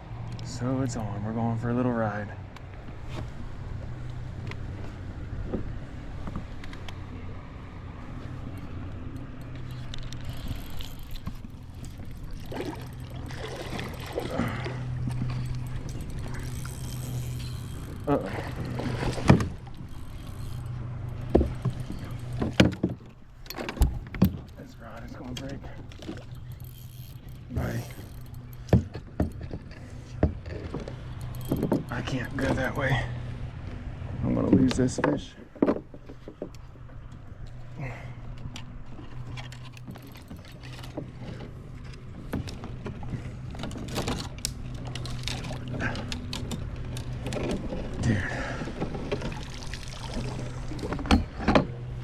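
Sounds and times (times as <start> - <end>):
steady low rumble: 0.0 - 52.0
water splashing against kayak hull: 8.1 - 32.8, 38.7 - 52.0.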